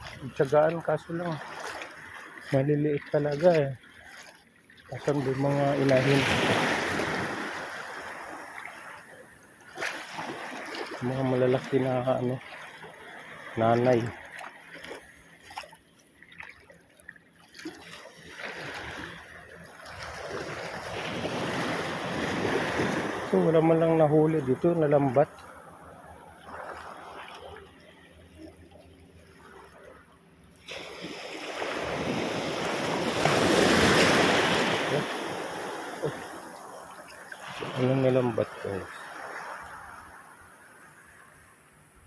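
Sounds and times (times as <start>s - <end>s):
shallow water trickling and splashing: 0.0s - 42.0s
small waves washing: 0.0s - 42.0s
sea wave washing in: 30.7s - 40.0s.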